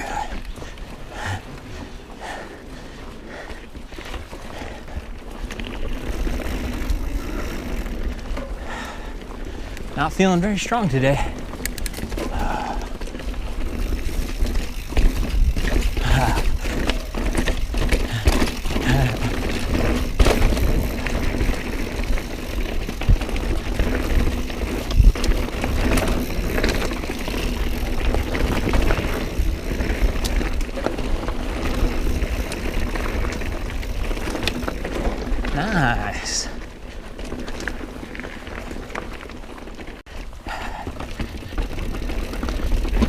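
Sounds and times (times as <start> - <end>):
bike rattling: 0.0 - 43.0
bike tyres knocking over rocks: 11.4 - 40.0.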